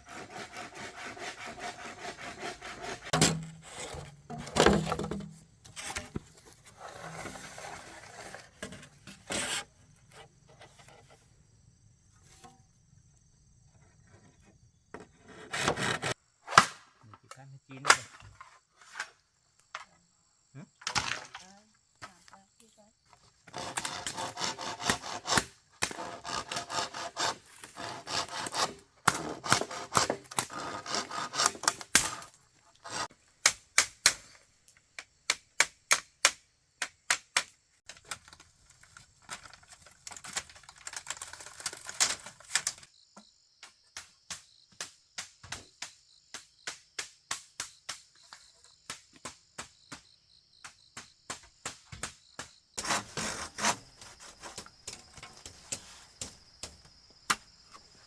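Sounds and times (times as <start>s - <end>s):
scraping or sawing wood: 0.0s - 11.2s, 14.1s - 16.2s, 23.5s - 33.1s, 52.8s - 56.8s
sharp strikes on wood: 2.8s - 5.4s.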